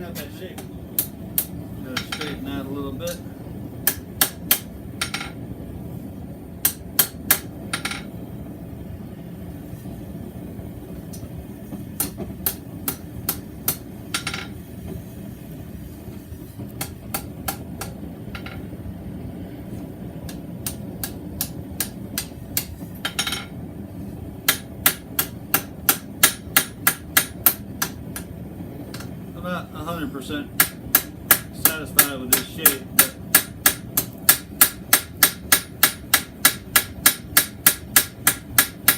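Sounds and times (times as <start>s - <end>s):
steady low hum: 0.0s - 38.9s
hammer striking steel on anvil: 3.8s - 5.4s, 6.6s - 8.1s, 12.0s - 14.5s, 20.3s - 23.5s, 24.5s - 28.3s, 30.6s - 38.9s.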